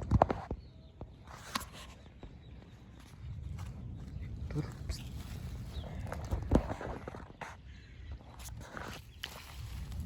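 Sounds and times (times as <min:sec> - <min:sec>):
soft rustle: 0:02.7 - 0:07.6, 0:08.3 - 0:10.0.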